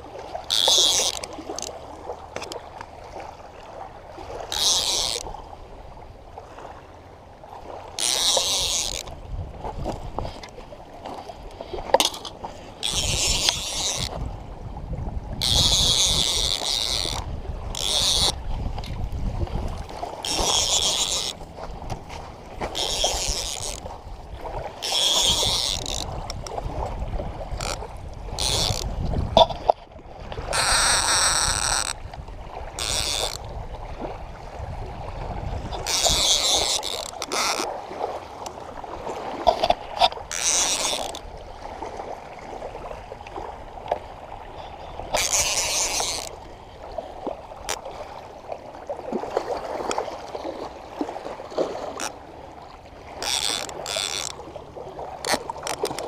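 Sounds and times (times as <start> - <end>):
water sloshing and splashing: 0.0 - 56.0
wind rumble on microphone: 8.6 - 48.3.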